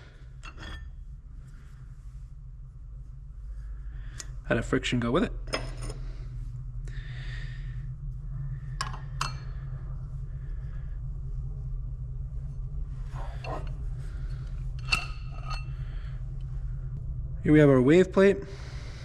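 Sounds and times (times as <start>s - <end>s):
low hum: 0.0s - 19.0s
metal parts clinking: 14.8s - 15.7s.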